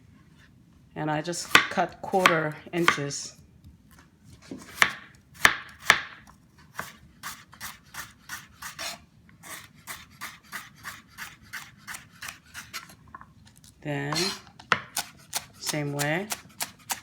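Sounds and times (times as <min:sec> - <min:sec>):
knife slicing vegetables: 0:01.4 - 0:03.2, 0:04.5 - 0:13.0, 0:14.1 - 0:17.0.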